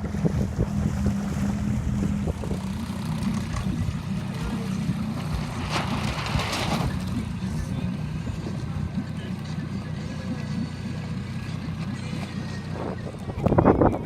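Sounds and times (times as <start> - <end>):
wind on microphone: 0.0 - 2.7, 12.7 - 14.0
water noise: 0.0 - 7.6
outboard motor droning: 0.0 - 14.0.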